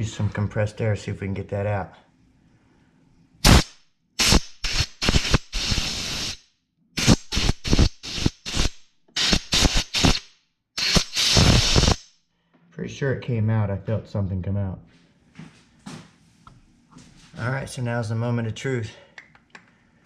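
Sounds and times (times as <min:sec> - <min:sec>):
compressed air blow gun blasts: 0:03.4 - 0:06.4, 0:07.0 - 0:12.1.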